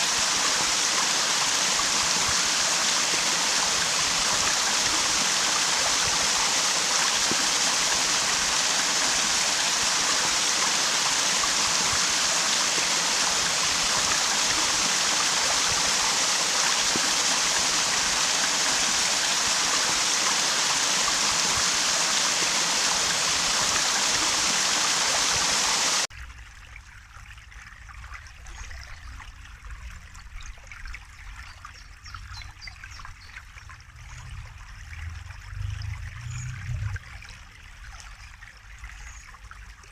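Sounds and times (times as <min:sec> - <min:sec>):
stream water rushing: 0:00.0 - 0:26.1
low rumble: 0:33.7 - 0:37.5.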